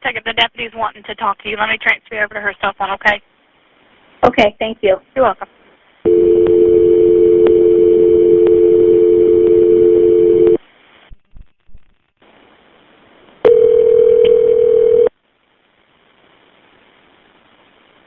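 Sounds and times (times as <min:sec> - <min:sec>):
two-note dial tone: 0:06.1 - 0:10.6, 0:13.5 - 0:15.1.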